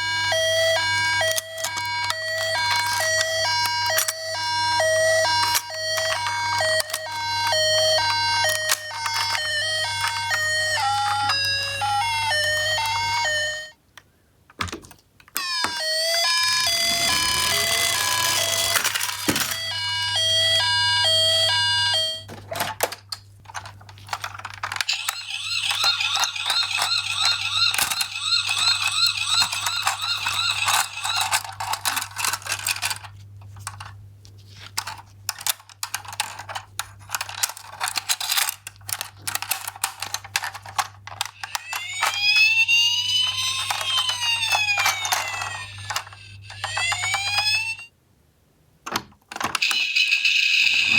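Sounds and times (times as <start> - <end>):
fast warbling siren: 0.0 - 13.7, 24.9 - 31.4, 41.4 - 47.9, 49.6 - 50.9
two-tone hi-lo siren: 0.0 - 13.8, 15.6 - 18.8, 19.4 - 22.3, 24.9 - 31.4, 41.4 - 47.9, 49.6 - 50.9
plastic toy cars clicking: 0.8 - 13.3, 16.8 - 19.6, 22.6 - 34.0, 34.7 - 47.6
rising-and-falling wail: 41.5 - 47.9.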